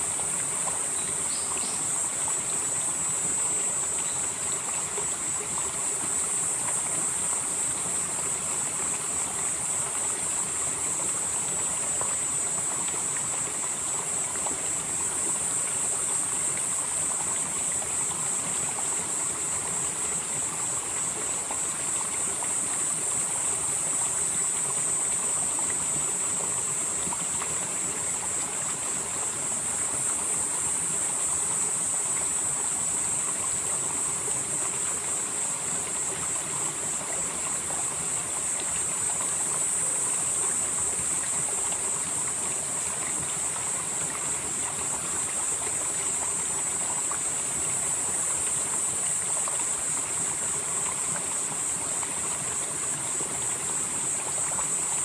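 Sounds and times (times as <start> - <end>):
high-pitched insect chorus: 0.0 - 12.6
stream flowing over rocks: 0.0 - 55.0.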